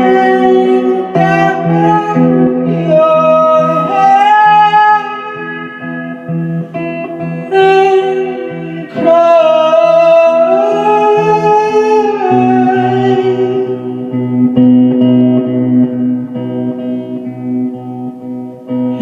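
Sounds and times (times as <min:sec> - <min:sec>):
person singing long note: 0:00.0 - 0:14.2
strummed guitar chords: 0:00.0 - 0:19.0.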